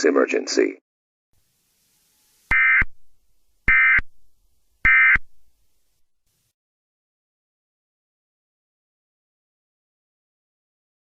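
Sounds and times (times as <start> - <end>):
shrill electronic warbling bursts: 1.6 - 5.6.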